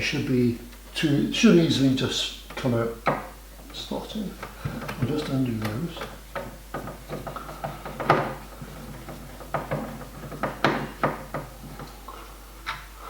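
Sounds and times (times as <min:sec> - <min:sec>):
tools clicking and knocking on metal: 0:04.4 - 0:12.0.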